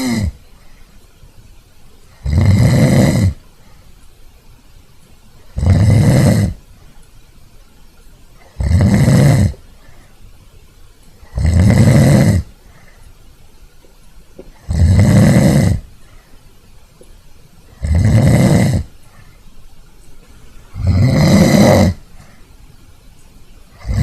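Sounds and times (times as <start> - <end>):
dog snoring: 0.0 - 0.4, 2.1 - 3.4, 5.5 - 6.7, 8.4 - 9.6, 11.2 - 12.9, 14.5 - 15.9, 17.7 - 19.2, 20.7 - 22.1, 23.7 - 24.0.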